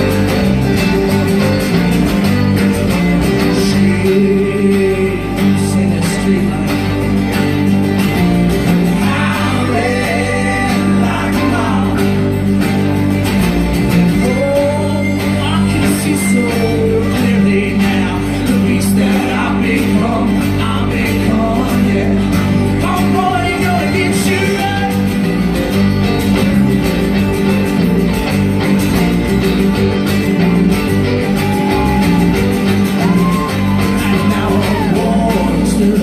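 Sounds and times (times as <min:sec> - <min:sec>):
live folk-rock band: 0:00.0 - 0:36.0
voices singing: 0:02.5 - 0:07.3, 0:08.6 - 0:12.9, 0:14.0 - 0:25.3, 0:29.9 - 0:36.0.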